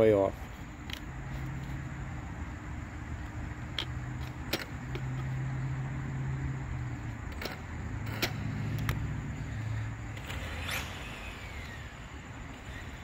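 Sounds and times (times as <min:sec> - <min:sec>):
low motor hum: 0:00.6 - 0:13.0.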